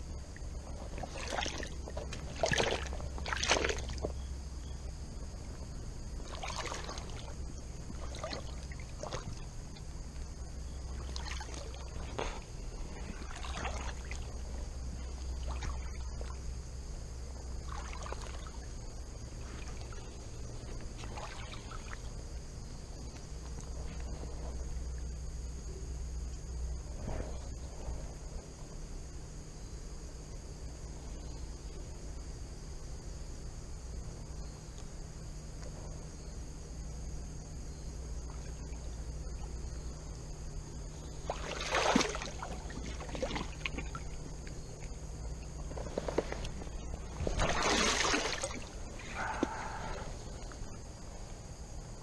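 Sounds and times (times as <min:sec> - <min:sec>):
steady low rumble: 0:00.0 - 0:41.4
water splashing around legs: 0:00.9 - 0:04.2, 0:06.2 - 0:09.8, 0:10.9 - 0:12.4, 0:13.1 - 0:14.6, 0:17.6 - 0:18.6, 0:20.8 - 0:22.1, 0:41.0 - 0:50.7.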